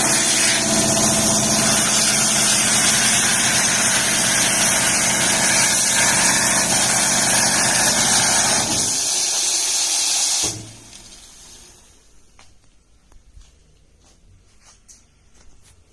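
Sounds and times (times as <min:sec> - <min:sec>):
plasma cutter hissing: 0:00.0 - 0:12.0.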